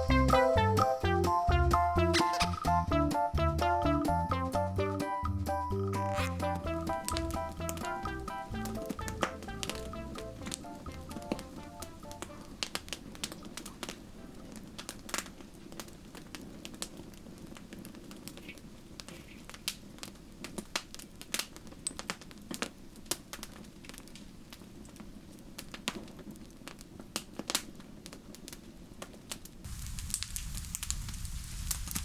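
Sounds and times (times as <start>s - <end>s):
campfire crackling and popping: 0.0s - 32.0s
rush of flame: 12.2s - 32.0s.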